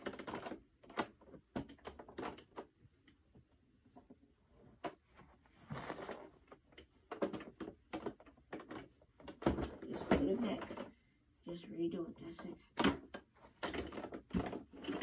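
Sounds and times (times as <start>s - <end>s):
fabric rustling: 5.0s - 6.7s.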